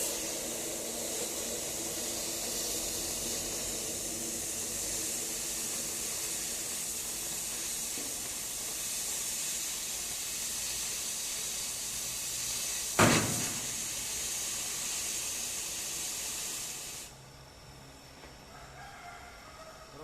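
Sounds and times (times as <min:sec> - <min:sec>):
cutting torch hissing: 0:00.0 - 0:17.2
sudden loud bang: 0:13.0 - 0:13.8.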